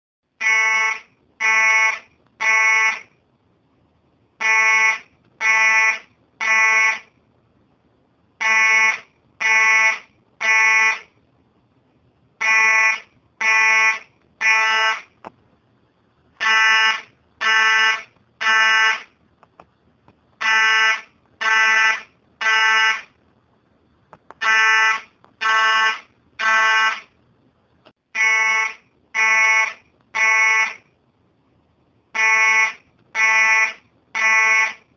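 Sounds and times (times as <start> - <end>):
fire alarm horn blasts: 0.4 - 3.1, 4.4 - 7.1, 8.4 - 11.1, 12.4 - 15.1, 16.4 - 19.1, 20.4 - 23.1, 24.4 - 27.1, 28.1 - 30.8, 32.2 - 34.9.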